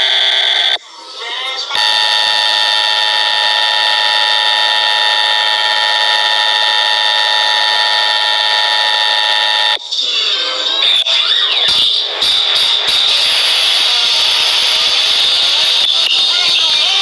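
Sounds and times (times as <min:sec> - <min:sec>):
two-tone alarm: 0:00.0 - 0:00.8, 0:01.7 - 0:09.8.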